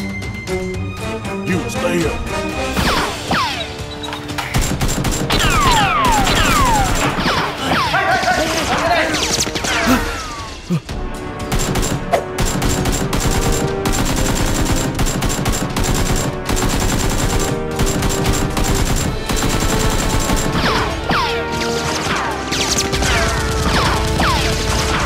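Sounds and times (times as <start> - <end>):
background music: 0.0 - 25.0
rapid gunfire: 4.5 - 9.9, 11.4 - 25.0.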